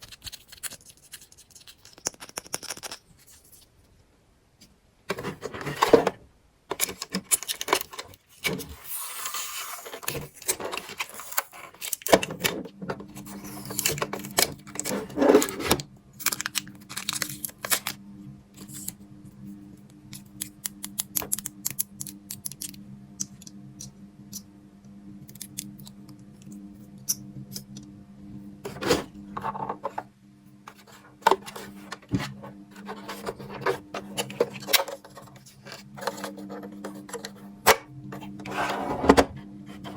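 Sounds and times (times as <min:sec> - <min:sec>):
plastic pieces clicking and rustling: 0:00.0 - 0:03.1, 0:06.7 - 0:08.7, 0:09.3 - 0:12.6, 0:13.2 - 0:18.0, 0:20.2 - 0:23.9
steady low hum: 0:08.4 - 0:39.9.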